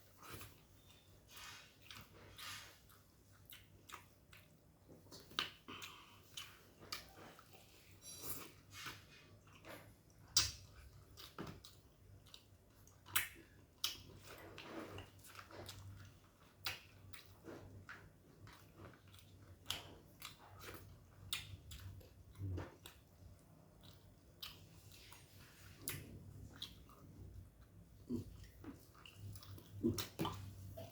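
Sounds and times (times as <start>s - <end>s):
person chewing food: 0.0s - 30.9s
wet mouth clicks and smacks: 10.3s - 11.6s, 13.0s - 14.4s.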